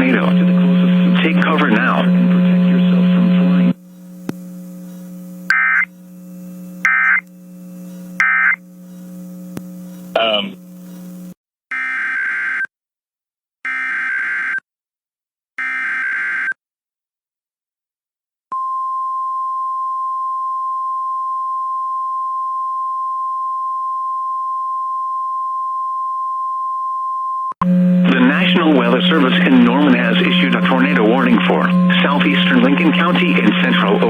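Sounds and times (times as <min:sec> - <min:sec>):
steady attention tone: 0:03.7 - 0:11.4, 0:27.6 - 0:34.0
digital header data bursts: 0:04.8 - 0:06.2, 0:06.8 - 0:07.2, 0:07.8 - 0:09.2.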